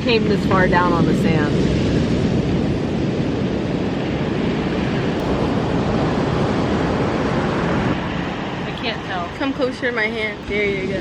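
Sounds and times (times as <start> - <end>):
car engine rumbling: 2.6 - 11.0.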